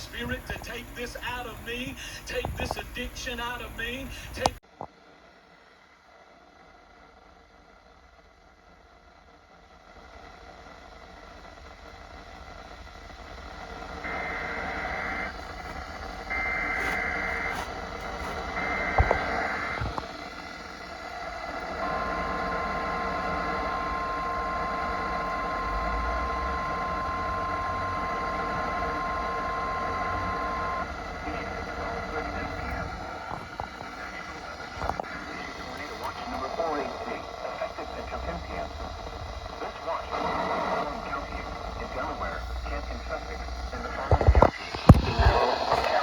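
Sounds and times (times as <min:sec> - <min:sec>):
steady warning alarm tone: 0:00.0 - 0:04.6, 0:11.2 - 0:46.0
radio hiss: 0:00.0 - 0:08.0, 0:08.6 - 0:46.0
two-pitch data tone bursts: 0:14.1 - 0:20.0, 0:21.8 - 0:34.9.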